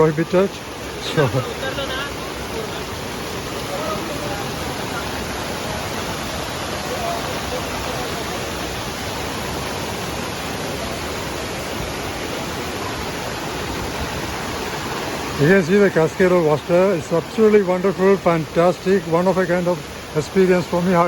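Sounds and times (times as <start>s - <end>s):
faint voices: 0.0s - 9.6s
waterfall rushing: 0.0s - 21.0s.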